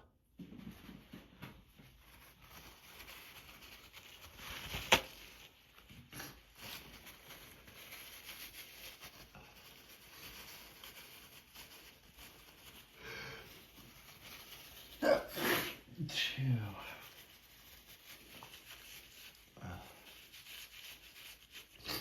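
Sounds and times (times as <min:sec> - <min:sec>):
tissue rustling: 0:00.3 - 0:22.0
person breathing: 0:12.9 - 0:13.7, 0:19.6 - 0:20.2
person sneezing: 0:15.0 - 0:15.9.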